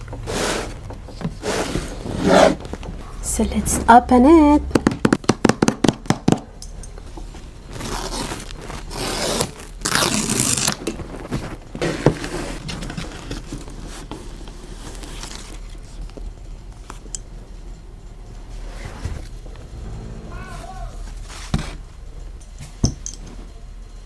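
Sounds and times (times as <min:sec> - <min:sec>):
packaging tearing and rustling: 0:07.6 - 0:15.9.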